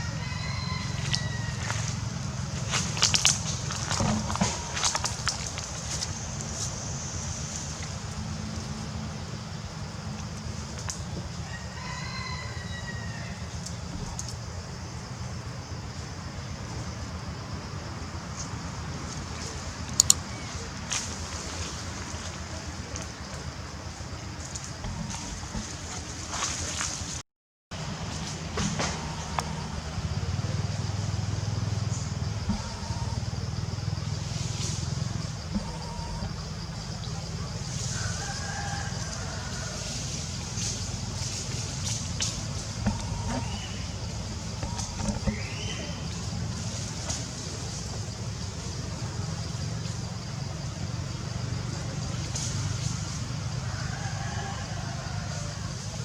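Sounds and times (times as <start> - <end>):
steady low rumble: 13.4 - 38.2, 38.9 - 49.5
drawn-out animal call: 27.8 - 48.2.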